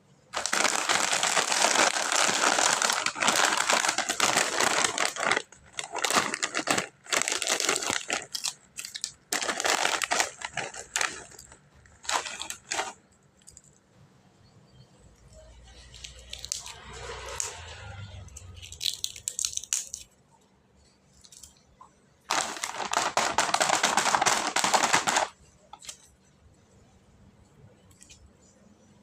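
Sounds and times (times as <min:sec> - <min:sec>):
snack packaging crinkling: 0:00.4 - 0:13.7, 0:15.8 - 0:17.6, 0:18.3 - 0:20.1, 0:21.2 - 0:21.6, 0:22.3 - 0:26.2.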